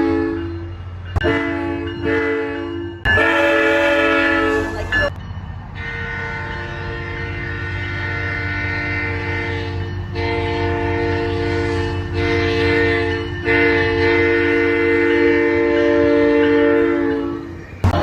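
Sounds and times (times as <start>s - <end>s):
multi-chime train horn blasts: 0.0s - 17.8s.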